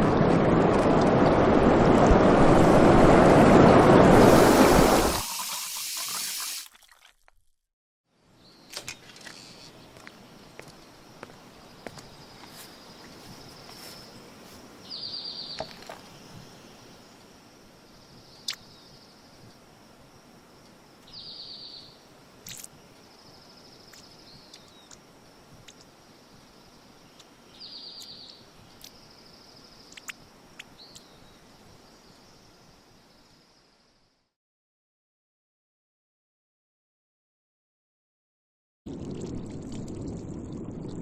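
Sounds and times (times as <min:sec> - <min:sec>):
faint steady hiss: 0:09.3 - 0:34.1.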